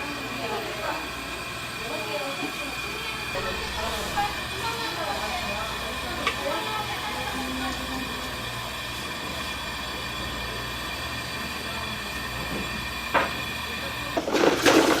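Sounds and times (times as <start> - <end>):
machine hum of shop equipment: 0.0 - 15.0
water splash: 14.2 - 15.0.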